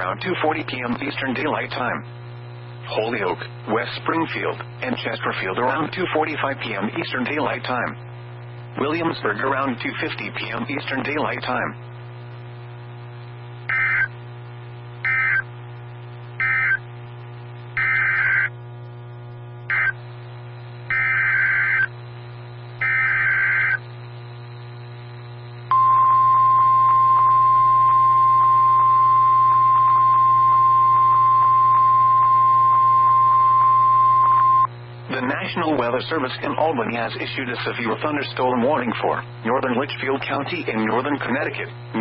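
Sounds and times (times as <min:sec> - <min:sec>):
receiver low hum: 0:00.0 - 0:42.0
steady warning alarm tone: 0:13.7 - 0:14.2, 0:15.0 - 0:15.5, 0:16.4 - 0:16.8, 0:17.8 - 0:18.6, 0:19.7 - 0:20.0, 0:20.9 - 0:22.0, 0:22.8 - 0:23.8, 0:25.7 - 0:34.7
warbling digital data tones: 0:17.8 - 0:18.5, 0:19.7 - 0:20.0, 0:20.9 - 0:21.9, 0:22.8 - 0:23.8.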